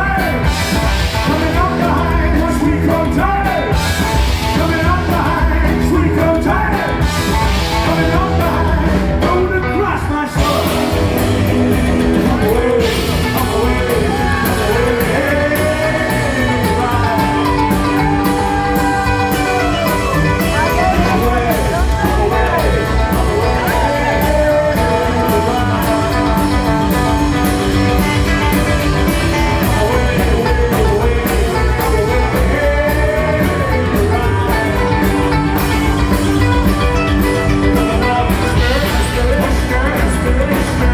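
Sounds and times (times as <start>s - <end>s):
steady drum beat: 0.0s - 9.8s, 10.4s - 40.9s
electric guitar: 0.0s - 40.9s.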